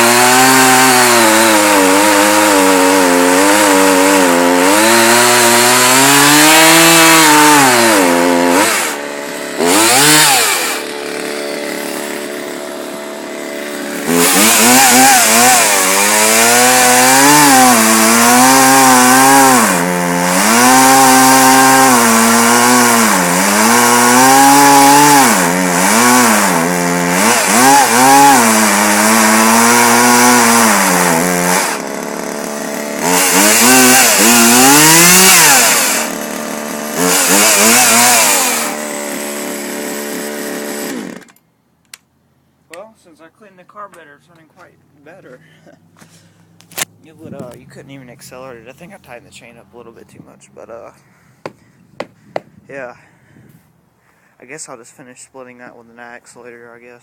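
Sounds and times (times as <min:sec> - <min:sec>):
chainsaw cutting wood: 0:00.0 - 0:41.5, 0:51.4 - 0:52.5.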